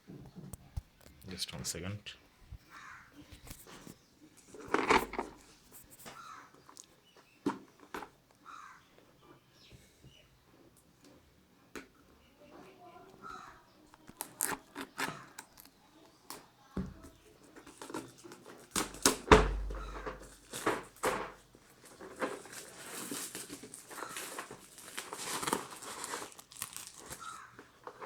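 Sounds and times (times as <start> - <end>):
packaging crinkling and tearing: 3.3 - 6.1, 14.0 - 15.8, 17.5 - 28.0.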